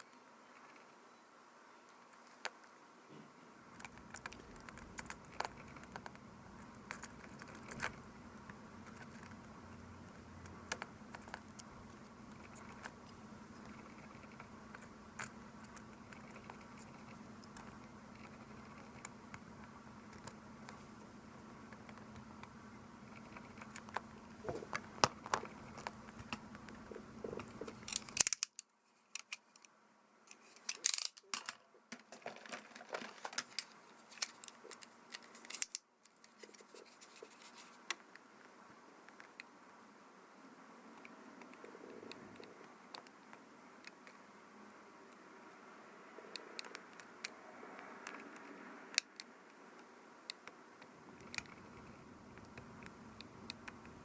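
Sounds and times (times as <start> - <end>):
steady low hum: 2.8 - 28.3, 36.4 - 54.0
small clicks of tools and parts: 27.4 - 29.7, 30.3 - 32.5.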